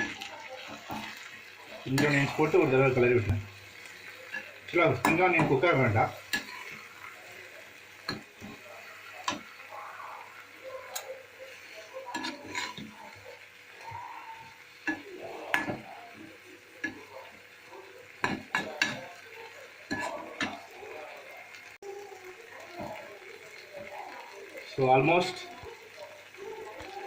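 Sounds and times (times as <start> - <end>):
faint sizzle: 0.0 - 27.0
metal spoon scraping frying pan: 1.8 - 2.8, 4.0 - 6.9, 12.0 - 13.0.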